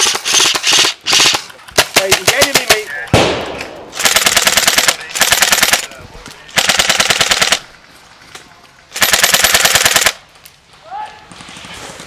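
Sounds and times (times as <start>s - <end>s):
airsoft gun bursts: 0.0s - 2.8s, 4.0s - 5.9s, 6.6s - 7.6s, 9.0s - 10.2s.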